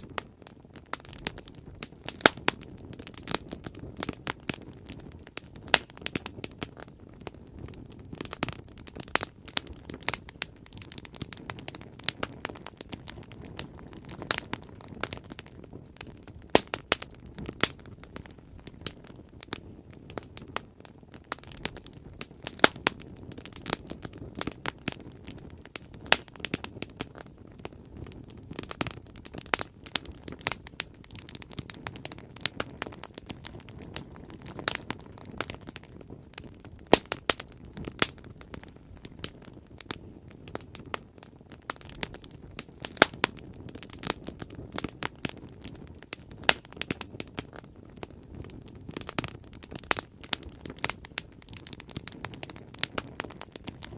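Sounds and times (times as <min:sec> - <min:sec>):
low steady fire rush: 0:00.0 - 0:49.8
bonfire crackling and popping: 0:00.0 - 0:53.9.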